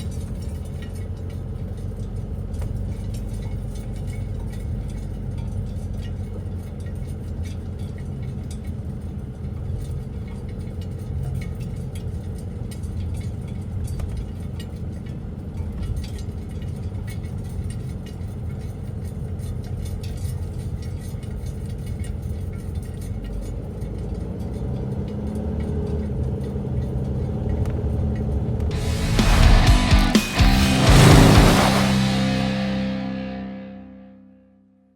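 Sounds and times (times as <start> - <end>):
truck engine running: 28.7 - 34.1.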